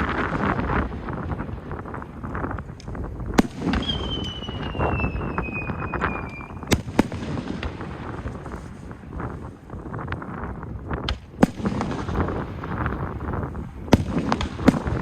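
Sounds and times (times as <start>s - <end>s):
firework bangs: 0.0s - 10.2s, 10.9s - 15.0s
firework whistle sliding down: 3.8s - 6.7s.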